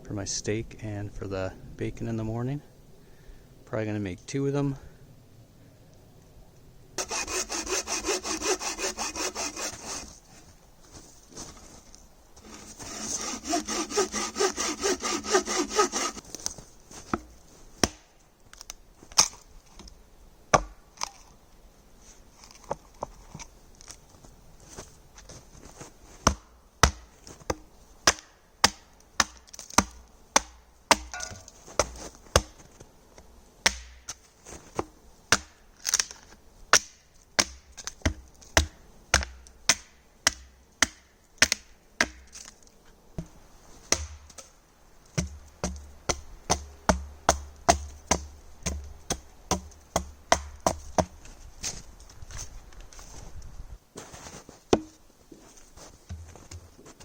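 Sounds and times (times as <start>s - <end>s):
wood chopping blows: 26.2s - 32.7s.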